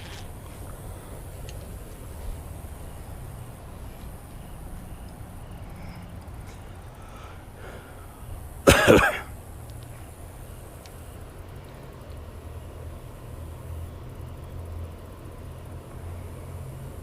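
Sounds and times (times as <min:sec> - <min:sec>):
steady low background noise: 0:00.0 - 0:17.0
person coughing: 0:08.7 - 0:09.3.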